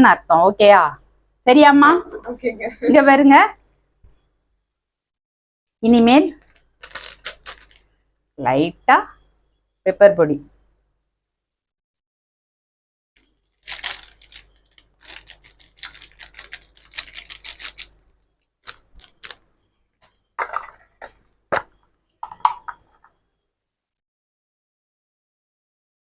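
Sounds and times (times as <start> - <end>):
pepper shaken from container: 6.4 - 7.8, 13.6 - 19.4
container knocking: 21.5 - 23.1.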